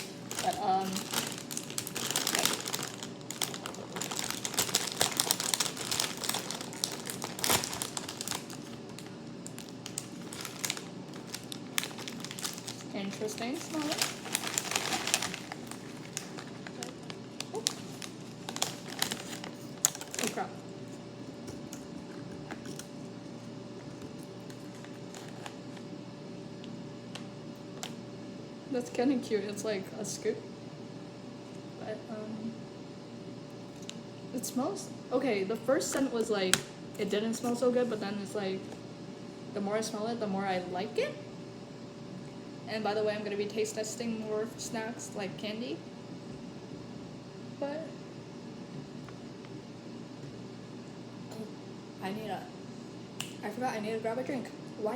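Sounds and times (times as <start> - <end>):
chip bag tearing open: 0.0 - 20.5
chip bag crinkling: 0.0 - 25.8
air fryer humming: 0.0 - 54.9.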